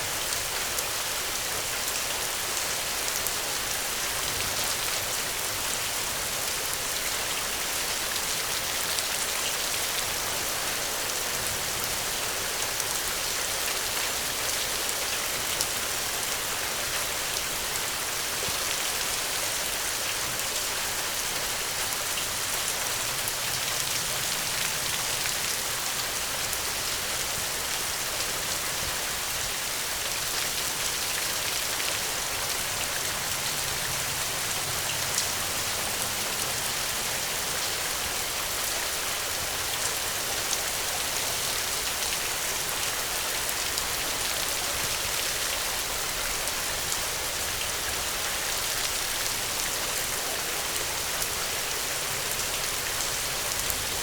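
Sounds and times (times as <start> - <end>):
steady rain patter: 0.0 - 54.0.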